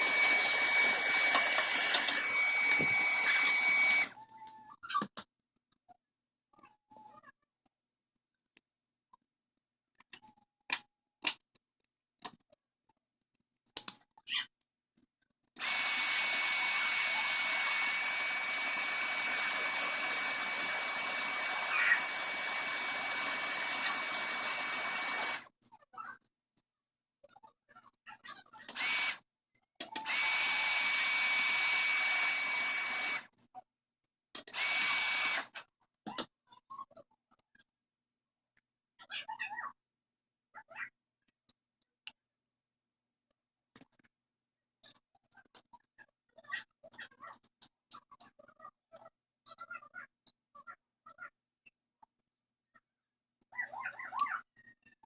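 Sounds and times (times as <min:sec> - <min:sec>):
small electric tool running: 0:00.0 - 0:04.1, 0:15.6 - 0:25.5, 0:28.7 - 0:29.2, 0:29.9 - 0:33.3, 0:34.5 - 0:35.6.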